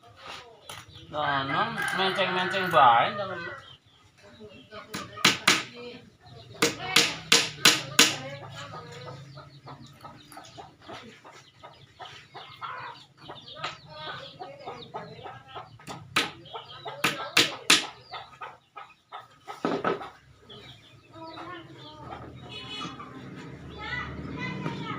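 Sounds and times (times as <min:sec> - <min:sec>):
chickens clucking: 0:00.0 - 0:24.9
hammer knocking on wood: 0:04.9 - 0:05.7, 0:06.6 - 0:08.2.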